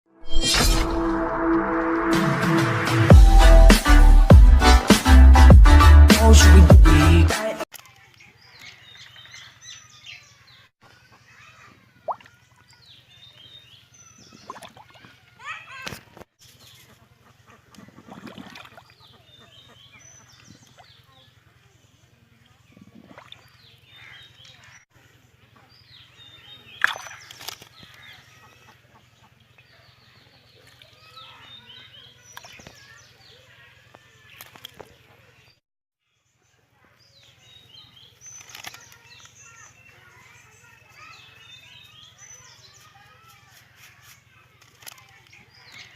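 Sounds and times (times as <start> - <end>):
short rising note: 0.2 - 5.8
faint birds chirping: 7.8 - 45.9.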